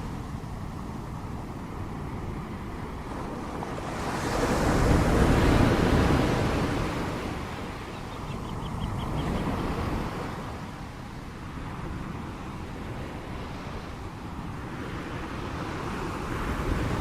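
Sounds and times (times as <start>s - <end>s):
ocean waves breaking: 0.0s - 17.0s.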